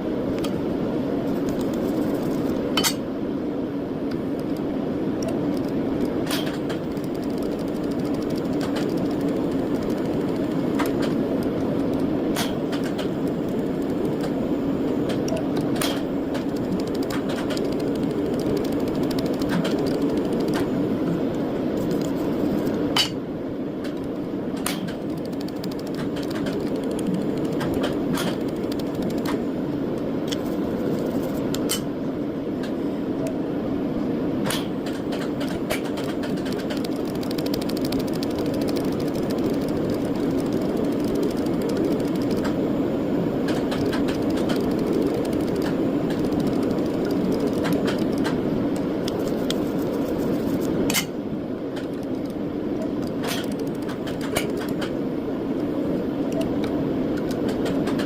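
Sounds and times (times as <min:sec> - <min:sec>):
steady mechanical hum: 0:00.0 - 0:58.0
sharp clicks: 0:04.1 - 0:14.4, 0:15.1 - 0:20.7, 0:23.8 - 0:29.4, 0:34.5 - 0:42.6, 0:43.5 - 0:51.1.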